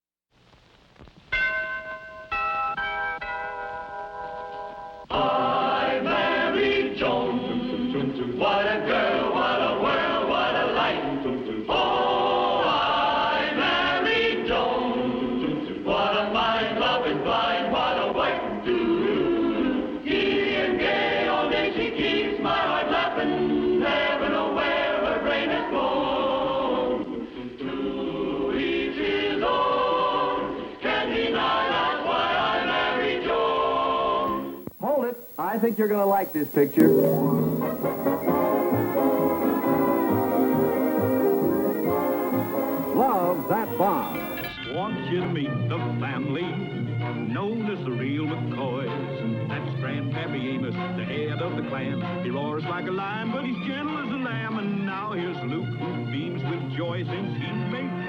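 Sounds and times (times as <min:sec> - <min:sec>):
choir singing: 0:05.2 - 0:11.1.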